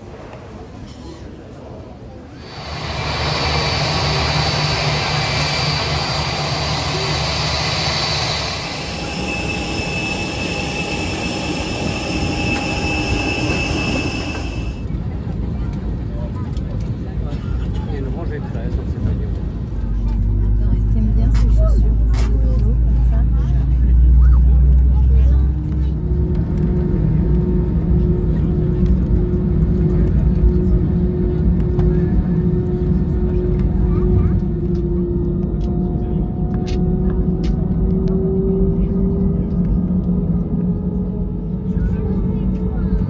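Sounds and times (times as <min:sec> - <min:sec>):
aircraft cabin engine rumble: 0:02.2 - 0:37.8
jet engine whine: 0:02.3 - 0:19.9
steady cabin hum: 0:02.4 - 0:14.9
low rumble: 0:02.4 - 0:16.1.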